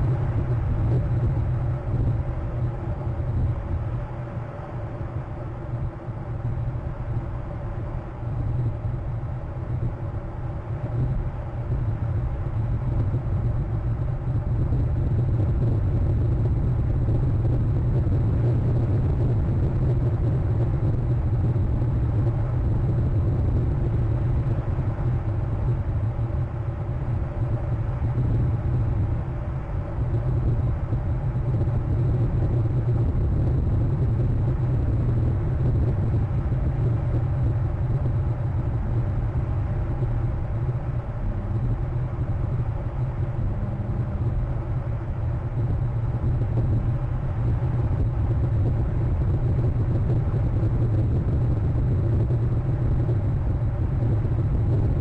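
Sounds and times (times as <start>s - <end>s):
low engine rumble: 0.0s - 55.0s.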